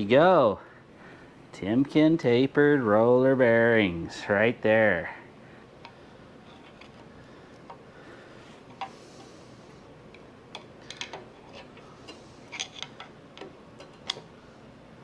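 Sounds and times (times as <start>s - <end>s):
metal parts clicking and tapping: 10.1s - 11.8s, 12.5s - 14.3s.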